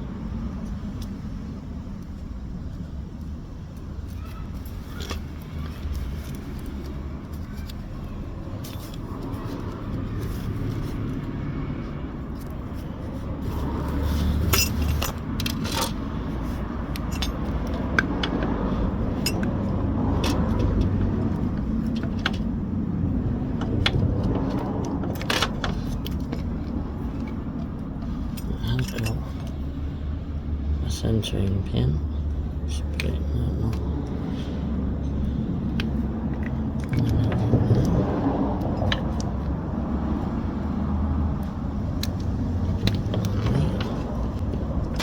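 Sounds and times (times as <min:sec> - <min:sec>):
steady low rumble: 0:00.0 - 0:45.0
metal tools clinking and scraping: 0:14.0 - 0:18.1, 0:19.0 - 0:20.6, 0:28.3 - 0:29.6.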